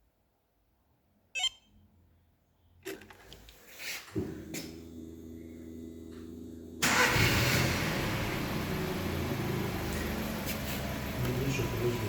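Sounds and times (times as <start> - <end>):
low steady hum: 4.2 - 10.0
car engine starting and running: 4.2 - 12.0.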